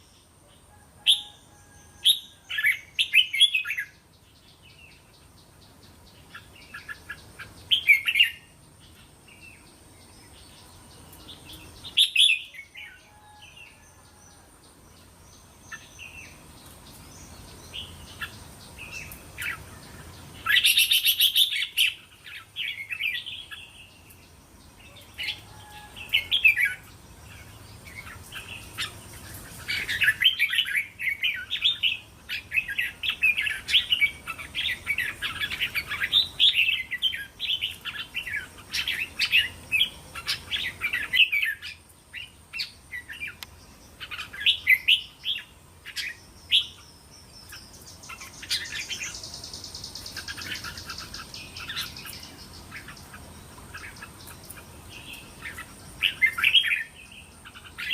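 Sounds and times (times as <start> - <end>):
bird song and chattering calls: 0.0 - 57.9.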